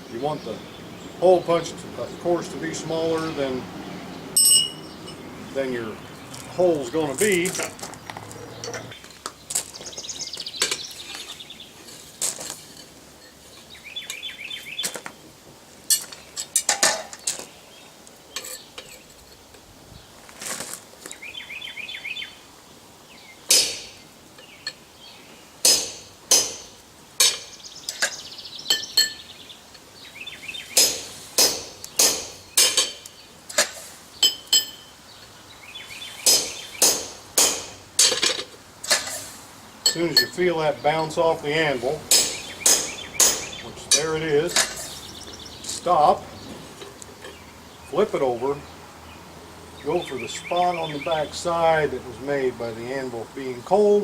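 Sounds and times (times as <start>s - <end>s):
hammer striking metal punch: 4.4s - 4.9s, 23.5s - 24.0s, 25.6s - 27.5s, 30.8s - 33.0s, 36.3s - 38.3s, 42.1s - 44.8s.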